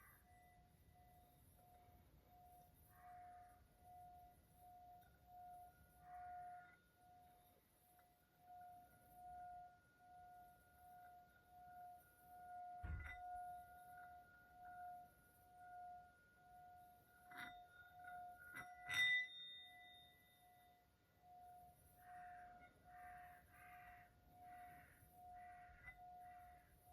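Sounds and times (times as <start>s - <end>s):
faint sustained ringing tone: 0.0s - 26.9s
struck metallic rings: 12.7s - 14.2s, 16.8s - 20.8s, 21.5s - 26.9s.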